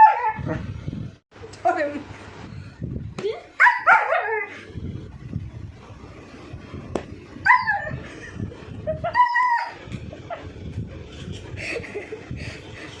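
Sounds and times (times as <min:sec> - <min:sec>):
puppy yelping: 0:09.0 - 0:09.9.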